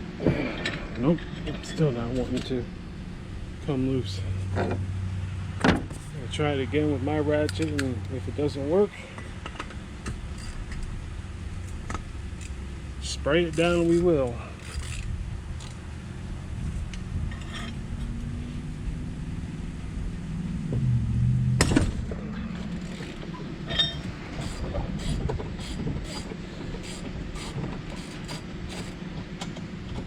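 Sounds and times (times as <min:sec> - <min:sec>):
low engine rumble: 0:00.0 - 0:30.0
ratchet clicking: 0:11.6 - 0:12.6, 0:13.5 - 0:15.8, 0:22.8 - 0:29.0.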